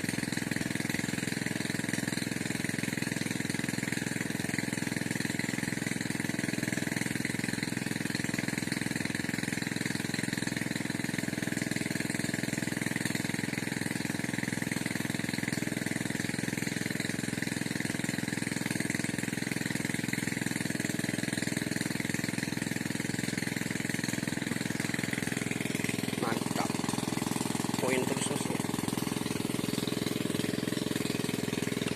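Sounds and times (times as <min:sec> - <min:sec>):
engine running with fast rattle: 0:00.0 - 0:31.9.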